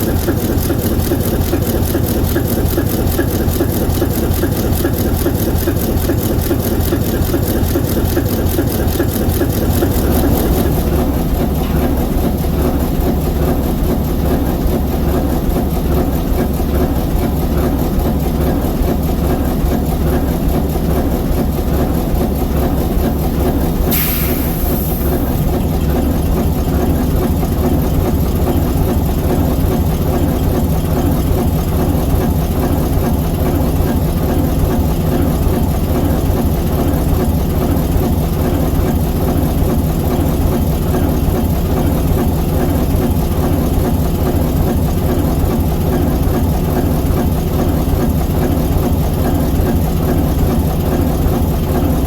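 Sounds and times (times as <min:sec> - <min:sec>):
locomotive diesel engine running: 0:00.0 - 0:52.0
short hiss: 0:23.8 - 0:25.6.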